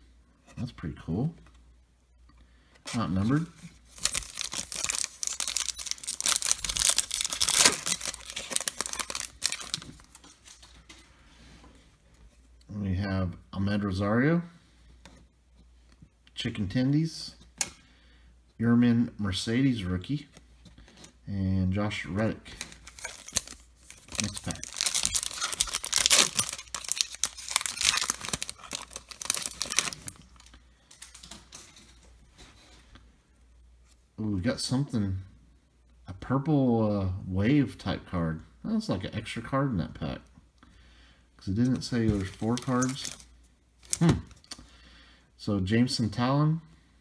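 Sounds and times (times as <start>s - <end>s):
foil wrapper tearing and crinkling: 3.9s - 10.7s, 22.8s - 31.2s, 42.1s - 44.1s.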